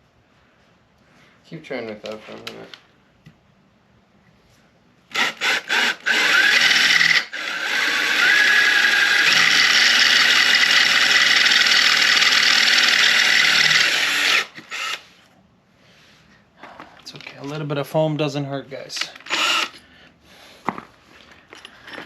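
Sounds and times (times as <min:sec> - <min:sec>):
power drill drilling into metal: 0:05.1 - 0:15.0, 0:19.3 - 0:19.8.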